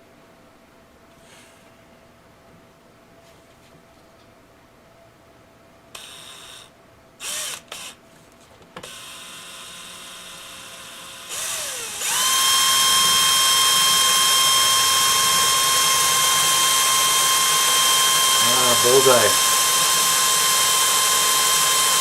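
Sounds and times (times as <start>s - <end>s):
electric drill drilling: 6.0s - 8.0s, 8.8s - 22.0s.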